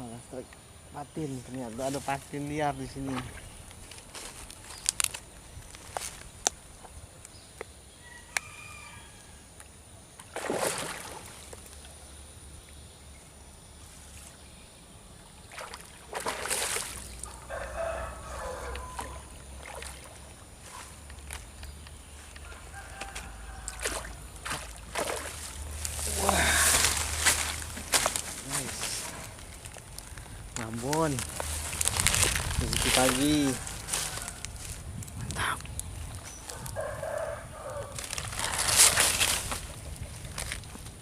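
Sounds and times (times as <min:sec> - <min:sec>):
outdoor background noise: 0:00.0 - 0:41.0
rooster crowing: 0:08.0 - 0:09.5, 0:17.4 - 0:19.4, 0:22.4 - 0:24.3, 0:33.2 - 0:34.8, 0:36.5 - 0:38.7.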